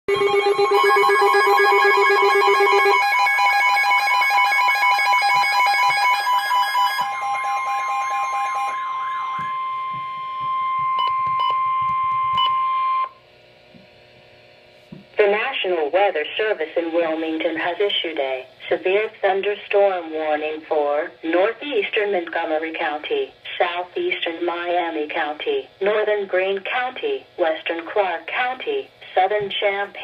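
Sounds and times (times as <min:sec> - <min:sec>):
electronic alarms beeping and warbling: 0:00.1 - 0:13.2
steady alarm tone: 0:00.1 - 0:13.2.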